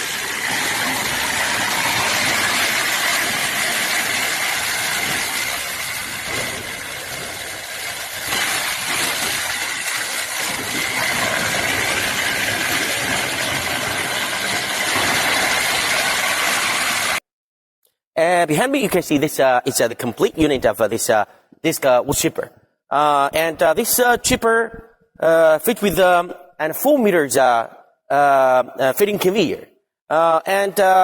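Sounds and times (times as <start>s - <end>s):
machine engine running: 0.0s - 17.2s.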